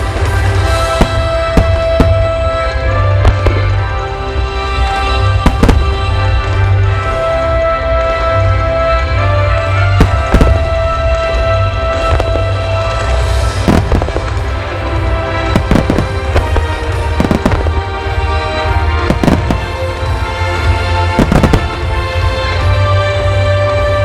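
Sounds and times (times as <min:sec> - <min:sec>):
music with long held notes: 0:00.0 - 0:24.0
fireworks shells bursting: 0:15.3 - 0:18.3, 0:19.0 - 0:22.4.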